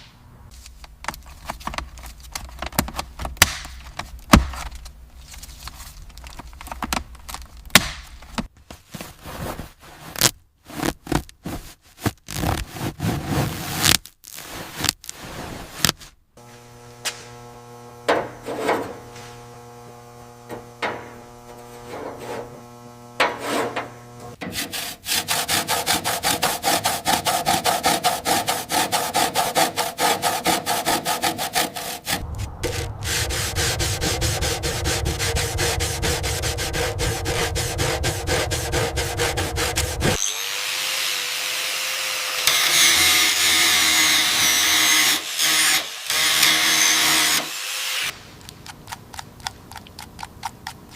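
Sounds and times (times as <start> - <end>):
steady hum: 16.4 - 24.4, 32.1 - 40.2
whirring tool: 16.4 - 48.2
sanding strokes: 21.5 - 48.1.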